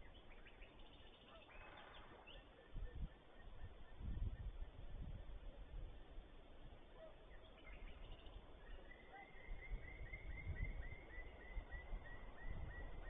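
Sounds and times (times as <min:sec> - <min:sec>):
low wind rumble: 0:00.0 - 0:13.0.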